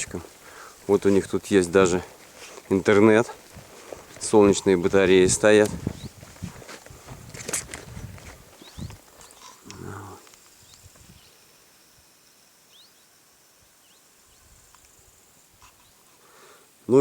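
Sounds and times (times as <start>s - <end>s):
small high chirps: 7.4s - 16.3s.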